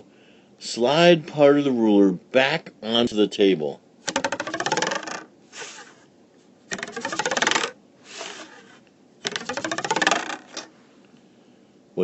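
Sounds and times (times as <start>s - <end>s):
ruler twanging on a table: 4.1s - 6.0s, 6.7s - 10.7s.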